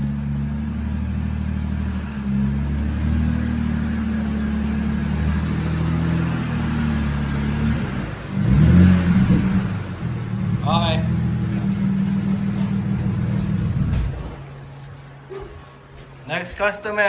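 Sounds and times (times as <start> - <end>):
car engine idling: 0.0 - 14.3.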